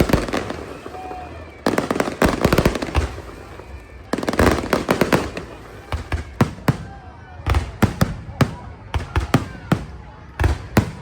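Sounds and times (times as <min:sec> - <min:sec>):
fireworks crackling volleys: 0:00.0 - 0:11.0
fireworks loud bangs: 0:00.0 - 0:11.0.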